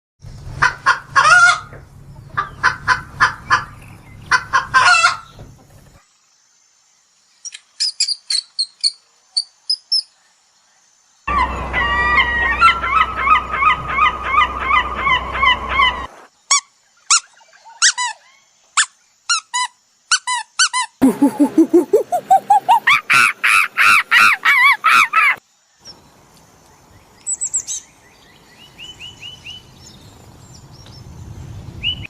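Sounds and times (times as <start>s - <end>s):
bird honking calls: 0.6s - 5.6s, 11.3s - 16.2s
high bird chirps: 7.4s - 10.1s, 16.5s - 26.0s
fast repeated bird call: 20.1s - 25.4s.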